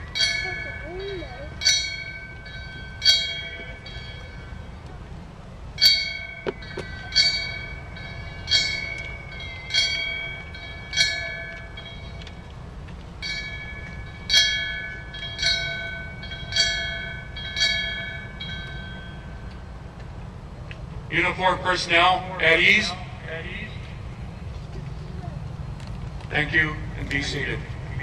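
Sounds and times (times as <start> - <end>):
fire bell struck slowly: 0.1 - 4.8, 5.8 - 12.6, 13.2 - 19.7.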